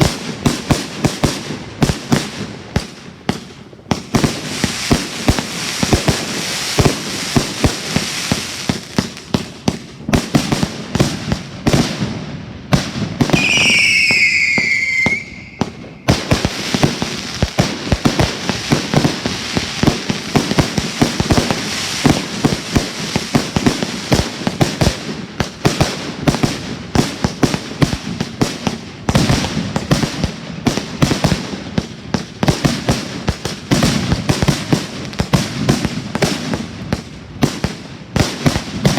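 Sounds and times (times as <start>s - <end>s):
fireworks bangs and crackling: 0.0s - 38.9s
firework falling whistle: 13.3s - 16.2s.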